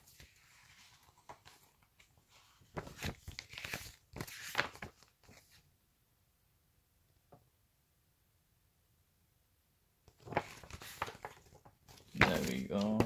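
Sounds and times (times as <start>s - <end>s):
plastic wrapper crinkling: 10.2s - 13.0s.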